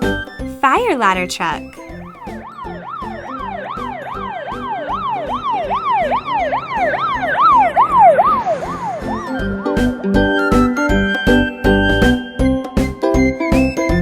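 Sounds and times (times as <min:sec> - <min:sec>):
fire truck yelp siren: 0:02.2 - 0:09.6.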